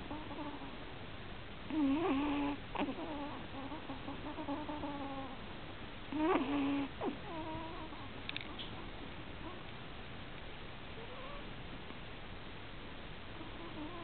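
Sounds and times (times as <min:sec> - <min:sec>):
puppy snoring with whistling tone: 0:01.7 - 0:03.8.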